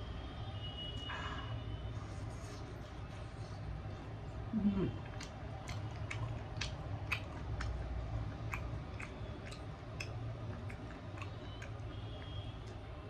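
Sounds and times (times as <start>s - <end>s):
person chewing food: 4.8s - 13.0s
wet mouth clicks and smacks: 5.0s - 13.0s.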